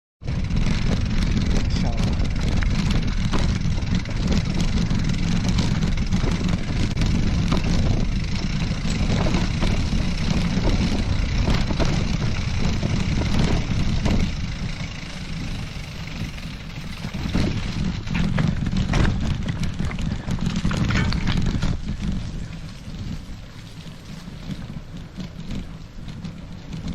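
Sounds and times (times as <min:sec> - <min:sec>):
bike rattling and knocking: 0:00.2 - 0:26.9
wind buffeting microphone: 0:00.2 - 0:26.9.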